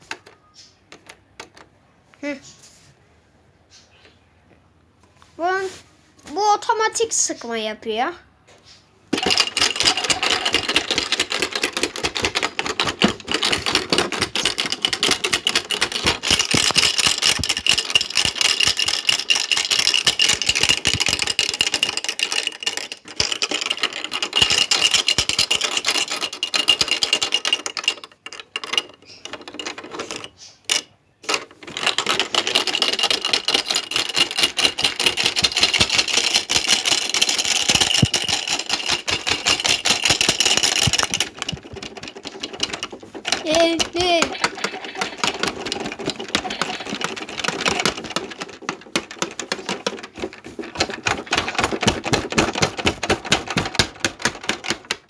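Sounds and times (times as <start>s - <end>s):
washing machine spin cycle rattling: 9.2s - 27.5s, 31.6s - 55.0s.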